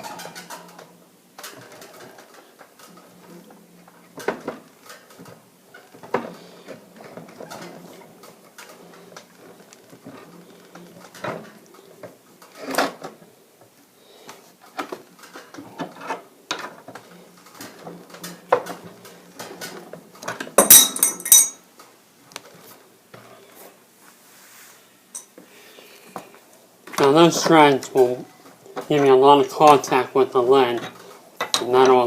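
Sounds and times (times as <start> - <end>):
ringing metal clatter: 20.6 - 21.6.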